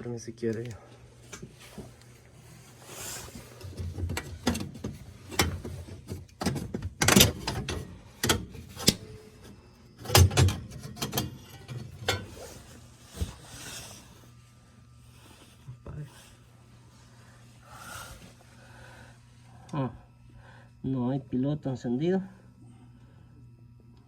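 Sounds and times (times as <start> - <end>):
faint low hum: 0.0 - 24.0
boiler parts clicking and knocking: 3.6 - 12.3.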